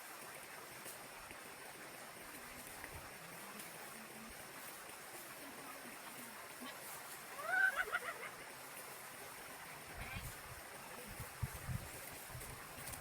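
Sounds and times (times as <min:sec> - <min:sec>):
faint outdoor hiss: 0:00.0 - 0:13.0
chicken squawking and clucking: 0:07.4 - 0:08.3.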